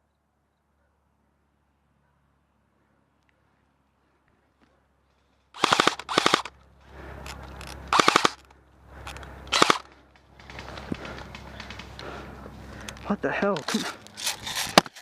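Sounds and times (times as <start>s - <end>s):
airsoft gun bursts: 5.6s - 6.5s, 7.9s - 8.5s, 9.5s - 9.9s.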